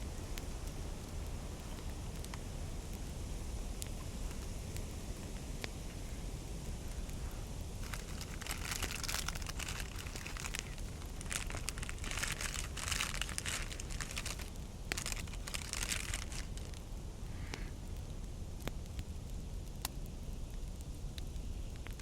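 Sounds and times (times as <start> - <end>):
steady low rumble: 0.0 - 21.9
crinkling crunching handling noise: 7.0 - 17.0.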